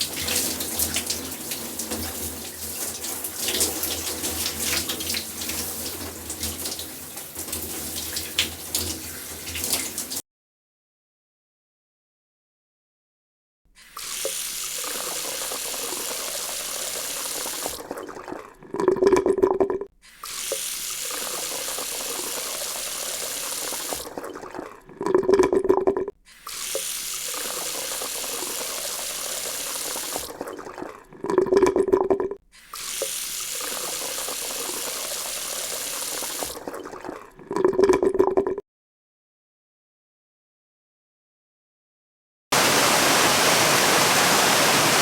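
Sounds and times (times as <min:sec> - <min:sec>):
tap water splashing into sink: 0:00.0 - 0:10.2, 0:13.9 - 0:17.9
low pitched water tone: 0:17.6 - 0:19.9, 0:23.8 - 0:26.1, 0:30.0 - 0:32.4, 0:36.4 - 0:38.6.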